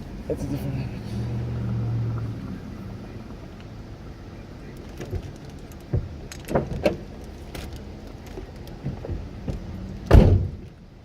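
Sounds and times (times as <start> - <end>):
handling knocks and rattles: 4.7 - 10.7
loud thump: 10.1 - 10.6.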